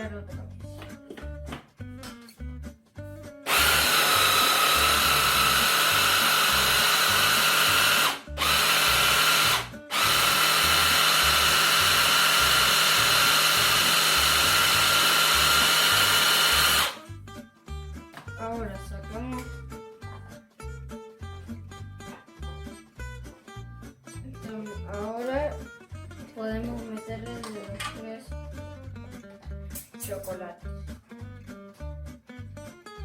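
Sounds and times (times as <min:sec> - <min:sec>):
electric blender whining: 0:03.5 - 0:17.0.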